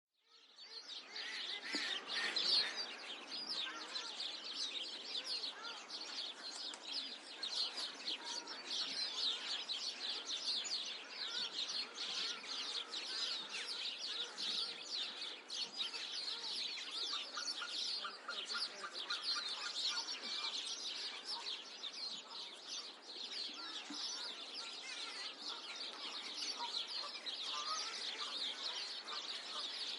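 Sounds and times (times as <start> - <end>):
sparrows chirping: 0.3 - 29.9.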